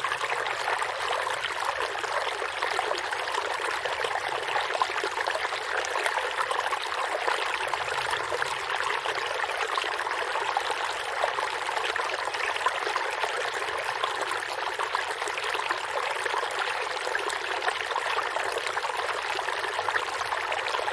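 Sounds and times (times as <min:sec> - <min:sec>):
stream water trickling: 0:00.0 - 0:20.9.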